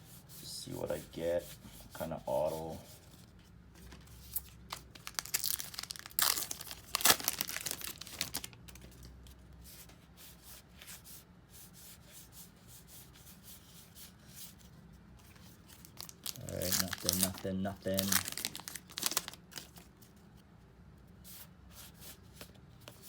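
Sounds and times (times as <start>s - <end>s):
wrapper tearing and crinkling: 4.7s - 8.6s, 15.7s - 19.9s.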